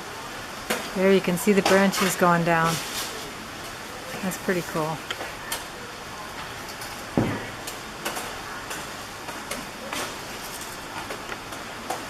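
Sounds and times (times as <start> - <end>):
palm fronds cracking and rustling: 2.0 - 4.3.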